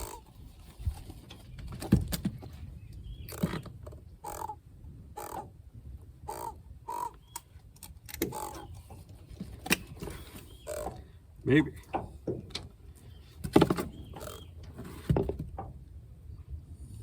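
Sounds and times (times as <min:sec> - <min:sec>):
crow cawing: 0:00.0 - 0:00.2, 0:04.2 - 0:04.6, 0:05.2 - 0:05.5, 0:06.3 - 0:07.2, 0:08.3 - 0:08.7, 0:10.7 - 0:11.0, 0:14.2 - 0:14.4.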